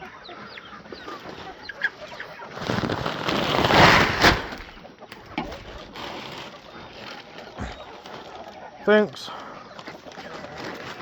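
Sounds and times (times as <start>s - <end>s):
chickens clucking: 0.0s - 11.0s
loud rustling: 2.5s - 8.6s.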